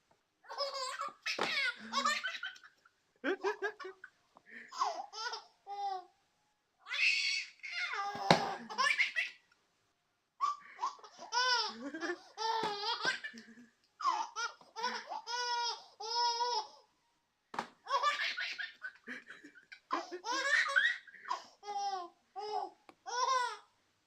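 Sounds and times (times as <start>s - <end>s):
baby belly-laughing: 0.5s - 4.1s, 10.4s - 13.4s, 17.9s - 23.6s.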